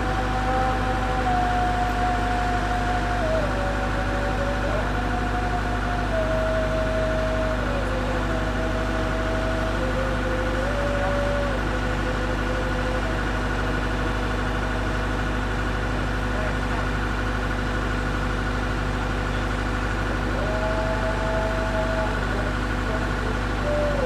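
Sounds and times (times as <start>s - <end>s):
whine changing pitch: 0.0s - 16.8s
diesel engine running: 0.0s - 24.0s.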